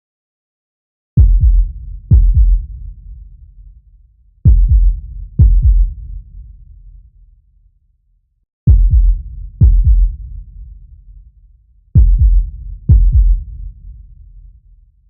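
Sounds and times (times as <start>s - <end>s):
heartbeat double thumps: 1.2s - 2.9s, 4.4s - 6.2s, 8.7s - 10.4s, 12.0s - 13.7s.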